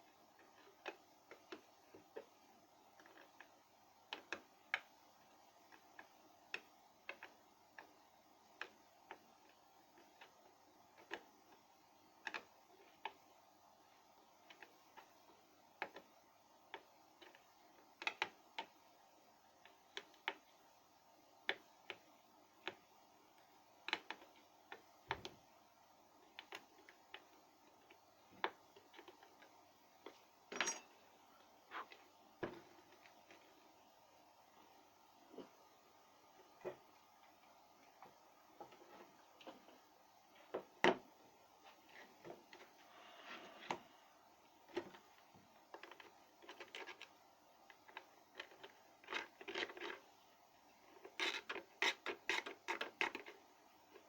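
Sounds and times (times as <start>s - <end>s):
small parts and tools clicking: 26.2s - 31.0s.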